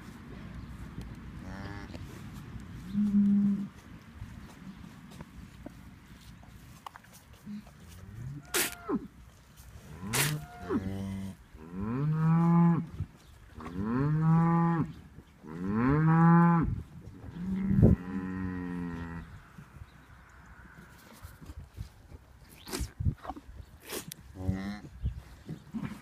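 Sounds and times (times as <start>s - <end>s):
calf mooing: 8.2s - 9.1s, 9.9s - 12.8s.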